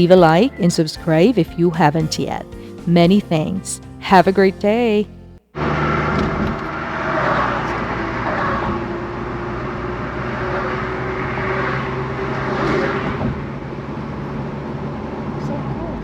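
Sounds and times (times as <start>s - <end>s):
car engine and road hum: 5.6s - 16.0s.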